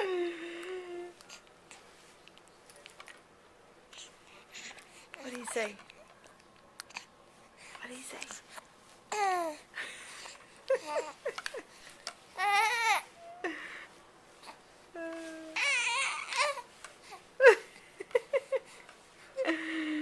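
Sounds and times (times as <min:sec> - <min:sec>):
baby babbling: 0:15.1 - 0:16.7.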